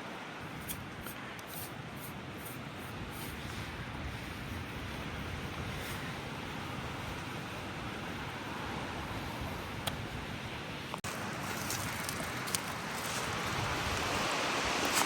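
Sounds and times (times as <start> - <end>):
atv engine and tyres: 0.6 - 15.0
wind on microphone: 1.9 - 10.9.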